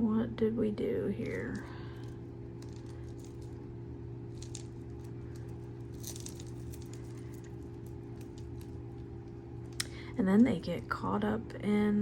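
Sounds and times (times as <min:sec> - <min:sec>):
low hum: 0:00.0 - 0:12.0
metal chains clinking: 0:04.3 - 0:08.6.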